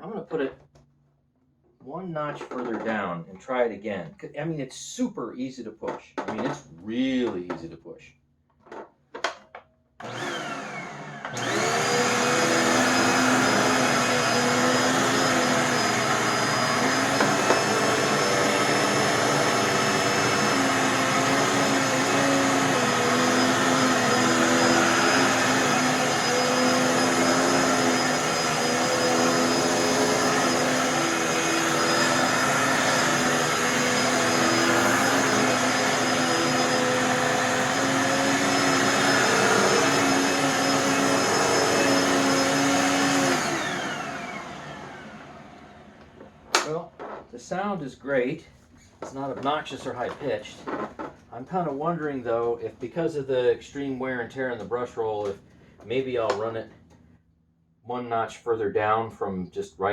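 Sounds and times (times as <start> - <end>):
vacuum cleaner clicks: 9.2 - 12.2, 46.1 - 46.8
vacuum cleaner motor whining: 10.0 - 47.2, 49.0 - 51.1.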